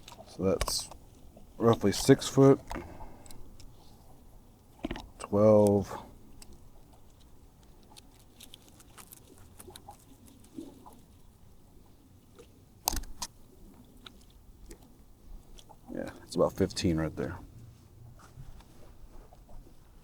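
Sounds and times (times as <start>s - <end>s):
cord rustling: 6.4s - 11.2s.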